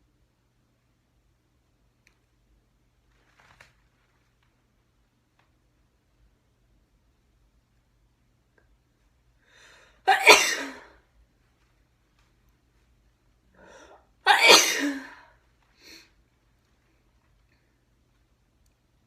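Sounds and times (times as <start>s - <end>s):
woman sneezing: 10.1s - 11.0s, 14.3s - 15.3s.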